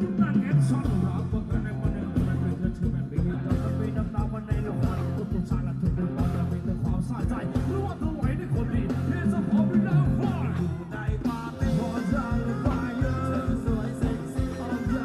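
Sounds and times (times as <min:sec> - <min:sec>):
band playing dance music: 0:00.0 - 0:15.0.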